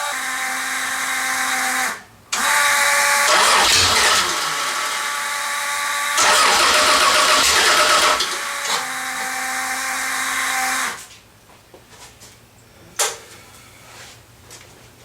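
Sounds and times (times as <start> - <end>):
engine running with whine: 0.0 - 11.1.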